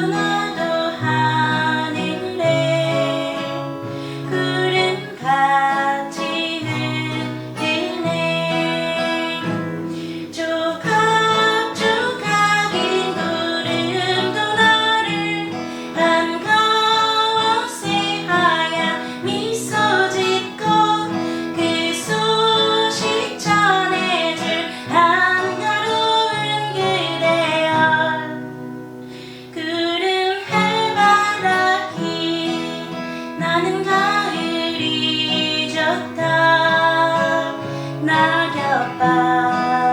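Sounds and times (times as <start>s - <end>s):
person singing: 0.0s - 28.6s, 29.2s - 39.9s
acoustic guitar playing: 0.0s - 39.9s.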